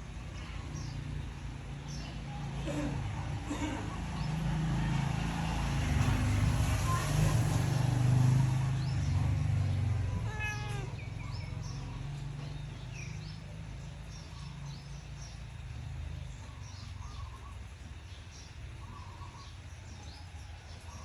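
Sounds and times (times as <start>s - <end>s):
cat meowing: 10.1s - 11.2s.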